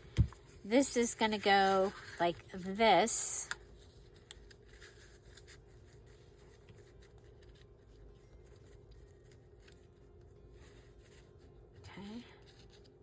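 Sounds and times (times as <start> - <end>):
low steady hum: 0.0 - 13.0
paper and card rustling: 0.0 - 13.0.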